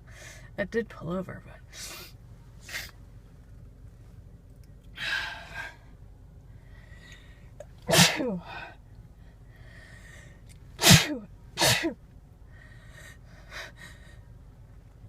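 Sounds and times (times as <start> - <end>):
breathy rush of air: 5.0 - 11.0
woman sneezing: 7.9 - 8.5, 10.8 - 12.0.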